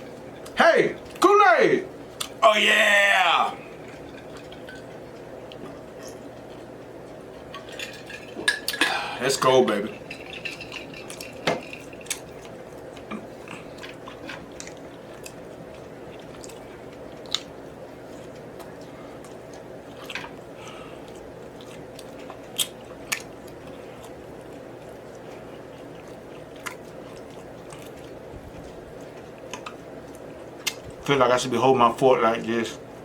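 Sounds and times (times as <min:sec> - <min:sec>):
steady low hum: 0:00.0 - 0:33.0
chewing and mouth smacking: 0:03.7 - 0:08.8, 0:10.0 - 0:31.0.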